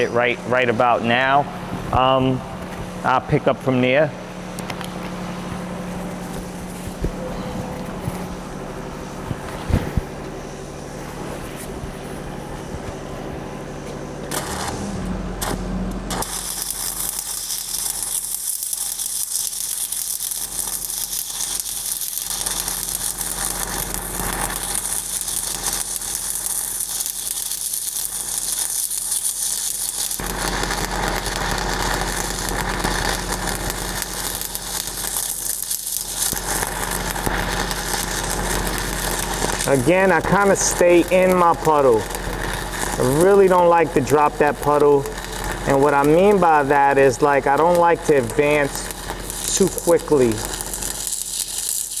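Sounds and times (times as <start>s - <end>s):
steady hum: 0.0s - 17.4s, 30.1s - 52.0s
welding arc crackling: 0.0s - 52.0s.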